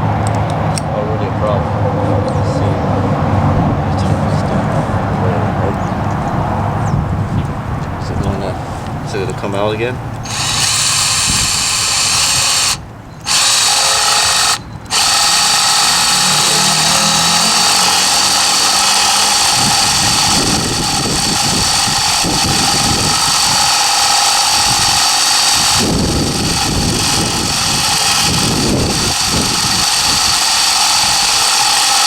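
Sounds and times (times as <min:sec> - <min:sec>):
cordless drill boring into wood: 0:10.2 - 0:32.0.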